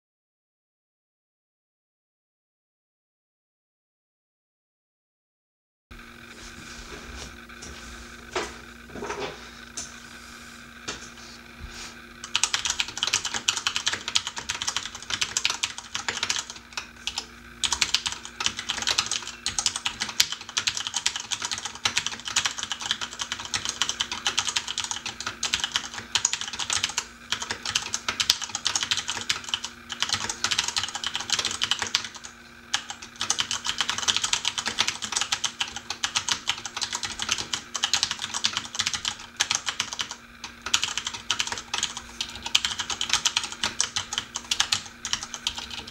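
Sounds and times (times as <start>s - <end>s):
faint air conditioner hum: 6.0s - 45.9s
mechanical keyboard typing: 12.2s - 45.9s.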